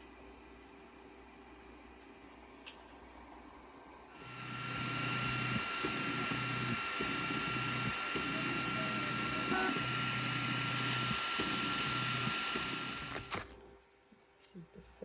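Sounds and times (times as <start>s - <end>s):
fans hissing with thin whine: 0.3s - 13.8s
low motor hum: 3.7s - 13.6s.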